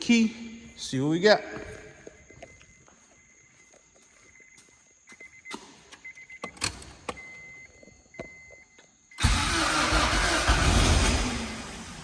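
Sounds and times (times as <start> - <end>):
engine cranking by starter: 9.2 - 12.0.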